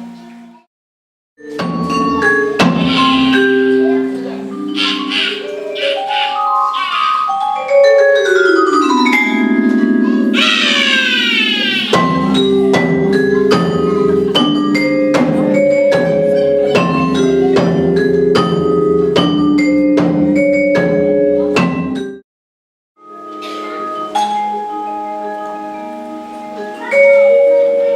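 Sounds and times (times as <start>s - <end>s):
beat of struck ringing notes: 1.4s - 22.2s.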